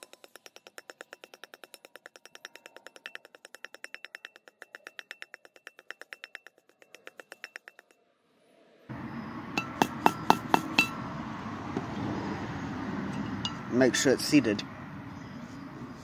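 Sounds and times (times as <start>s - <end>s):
fast even ticking: 0.0s - 7.9s
metal being tapped: 0.0s - 8.0s, 9.5s - 11.0s, 13.1s - 13.6s.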